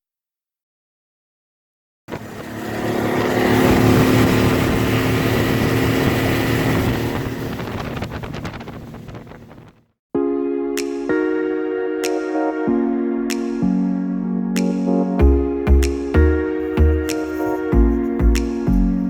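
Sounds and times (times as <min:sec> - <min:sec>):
motorboat engine running: 0:02.1 - 0:09.8.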